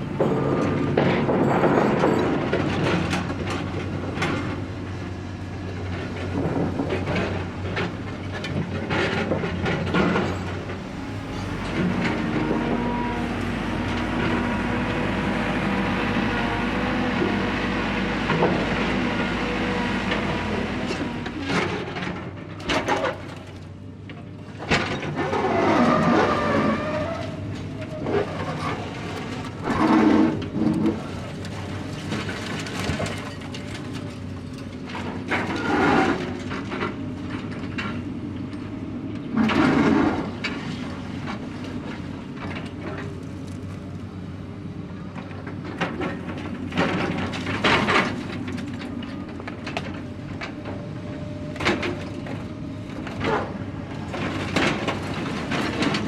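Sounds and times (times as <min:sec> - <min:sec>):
machine engine running: 0:09.2 - 0:21.3.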